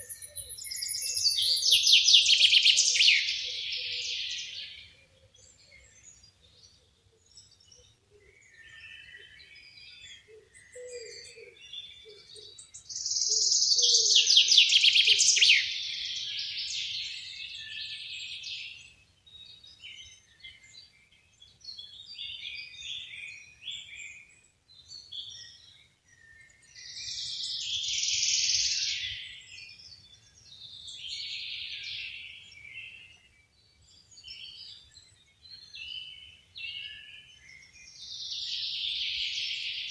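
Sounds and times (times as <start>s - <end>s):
bird trill: 0.0s - 5.0s, 10.2s - 18.1s
songbirds singing: 0.0s - 39.9s.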